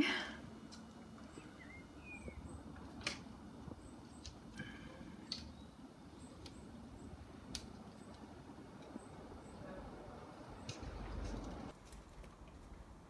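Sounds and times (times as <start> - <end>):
faint high chirps: 1.2 - 2.7.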